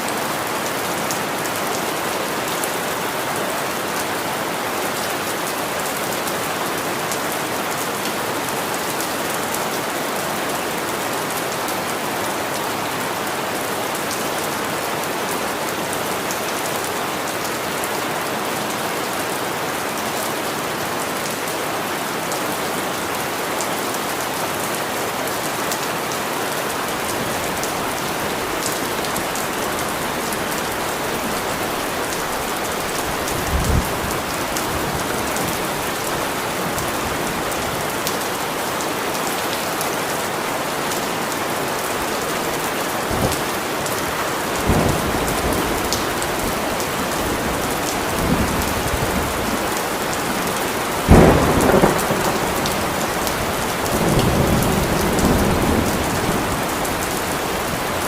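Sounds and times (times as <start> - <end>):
steady rain falling: 0.0 - 58.0
low rumbles of thunder: 51.1 - 56.5.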